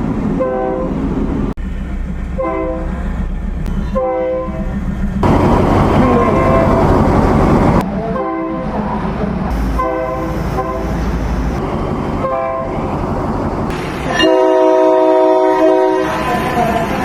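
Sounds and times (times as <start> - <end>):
train running: 0.0 - 17.0
train horn blasts: 0.4 - 1.0, 2.4 - 2.9, 3.8 - 4.7, 6.0 - 7.0, 8.1 - 8.7, 9.5 - 11.2, 12.2 - 12.8, 14.0 - 16.7.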